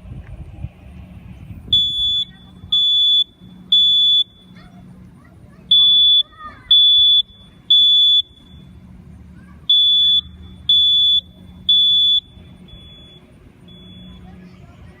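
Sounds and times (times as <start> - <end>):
smoke alarm beeping: 1.7 - 4.6, 5.7 - 8.8, 9.7 - 14.3.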